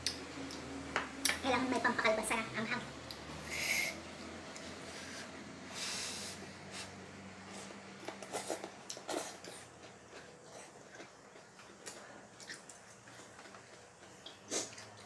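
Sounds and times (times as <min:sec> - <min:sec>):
noisy breath: 0:03.3 - 0:04.1, 0:04.8 - 0:07.7
chewing and slurping: 0:04.5 - 0:15.0.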